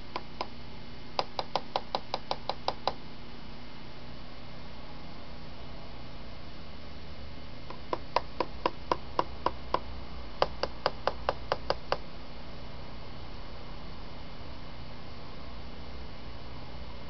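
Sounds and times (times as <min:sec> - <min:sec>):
bird beak knocking on hard surface: 0:07.7 - 0:09.8.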